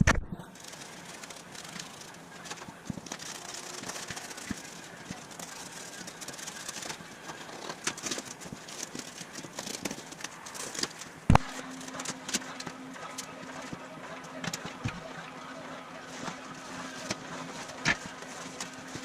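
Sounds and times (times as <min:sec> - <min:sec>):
material rustling and crackling: 0:00.5 - 0:12.9.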